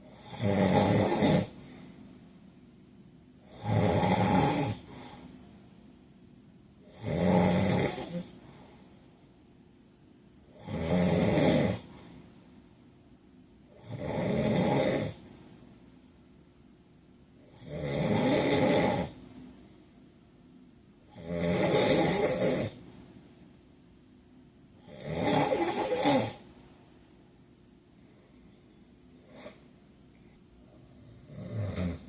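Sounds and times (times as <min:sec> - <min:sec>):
man snoring: 0:00.0 - 0:01.7, 0:03.4 - 0:05.2, 0:06.8 - 0:08.4, 0:10.5 - 0:12.0, 0:13.7 - 0:15.2, 0:17.5 - 0:19.2, 0:21.1 - 0:22.8, 0:24.8 - 0:26.4, 0:31.0 - 0:32.0
quiet breathing: 0:00.0 - 0:09.6, 0:11.2 - 0:14.0, 0:15.0 - 0:16.4, 0:18.2 - 0:20.2, 0:25.6 - 0:32.0.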